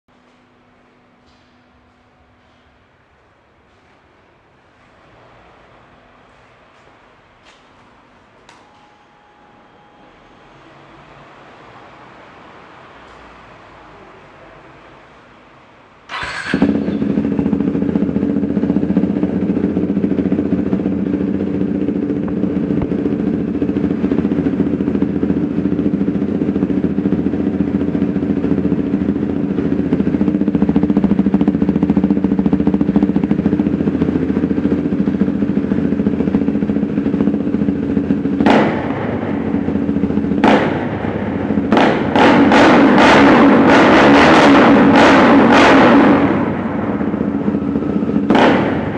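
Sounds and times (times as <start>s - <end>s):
motorcycle engine idling: 16.1s - 48.9s.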